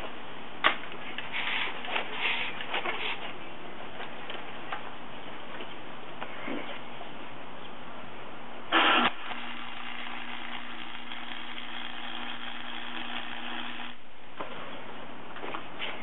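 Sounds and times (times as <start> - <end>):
arc welding buzzing crackle: 8.7 - 14.0.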